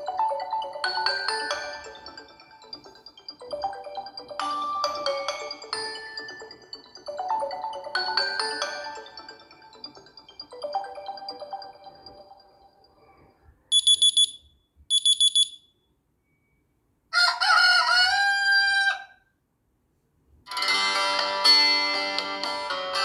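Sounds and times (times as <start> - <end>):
guitar ringtone tune: 0.0 - 12.6, 20.5 - 23.0
mallet ringtone tune: 0.0 - 12.9
recorded rooster crowing: 17.1 - 19.3.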